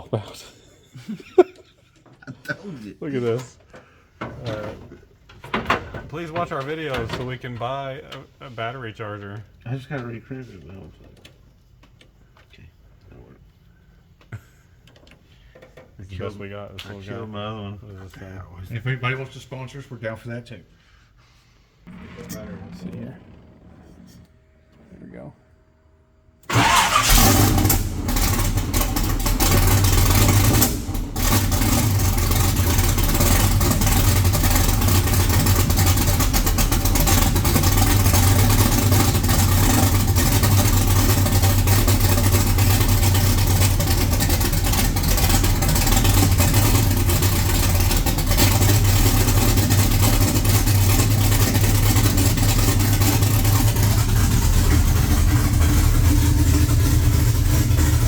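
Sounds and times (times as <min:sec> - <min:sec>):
car engine starting and idling: 0:26.4 - 0:58.0.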